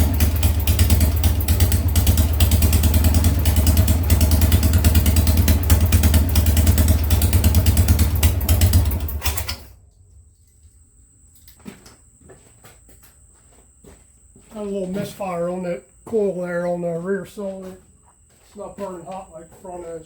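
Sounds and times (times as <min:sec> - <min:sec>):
motorcycle engine running: 0:00.0 - 0:09.9
engine winding down: 0:00.0 - 0:10.5.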